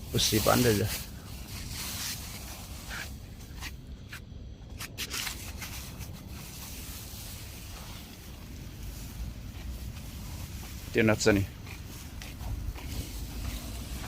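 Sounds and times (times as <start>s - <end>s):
faint rustling and handling: 0.0s - 14.0s
steady background hiss: 0.0s - 14.0s.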